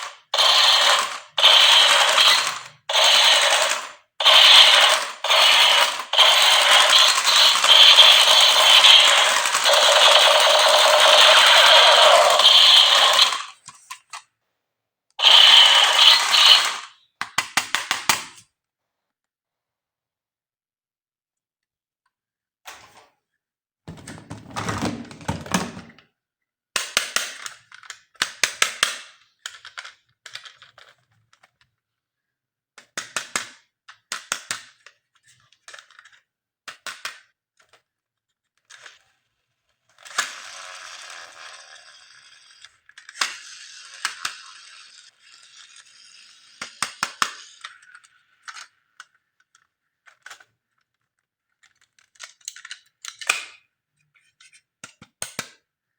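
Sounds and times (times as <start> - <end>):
plastic toy parts clicking: 0.0 - 14.3, 15.2 - 18.5, 26.8 - 31.7, 32.8 - 39.0, 39.9 - 55.6.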